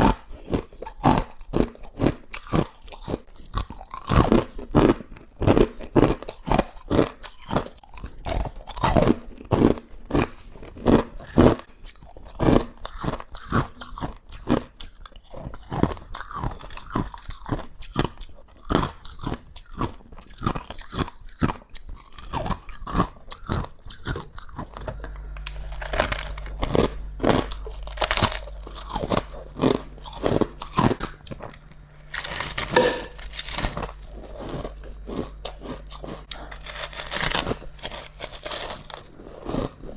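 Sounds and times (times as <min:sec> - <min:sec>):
low steady hum: 0:22.2 - 0:39.9
ice being crunched: 0:25.5 - 0:39.9.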